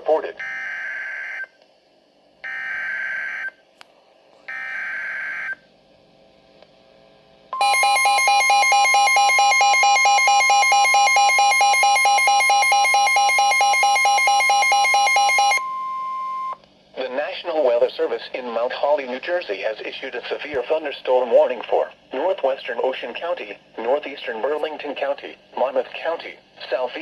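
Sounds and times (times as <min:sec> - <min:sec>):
rapidly pulsing alarm tone: 0:07.6 - 0:16.6
steady alert tone: 0:07.6 - 0:16.6.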